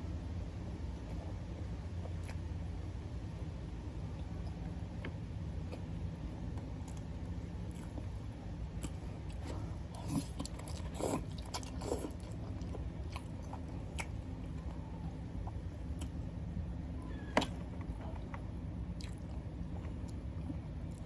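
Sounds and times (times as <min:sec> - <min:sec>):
steady low hum: 0:00.0 - 0:21.0
person chewing noodles: 0:05.6 - 0:16.4, 0:17.9 - 0:21.0.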